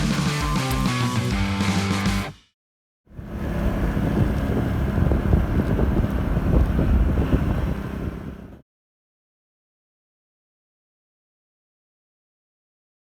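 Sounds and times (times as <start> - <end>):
scooter engine rumble: 3.2 - 8.6
wind buffeting microphone: 3.2 - 8.6.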